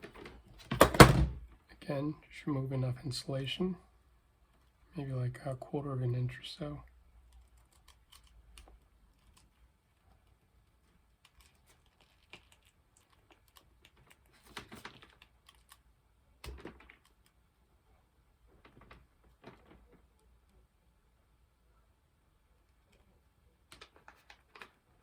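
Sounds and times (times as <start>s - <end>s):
cable being handled: 7.2s - 17.4s, 22.7s - 25.0s.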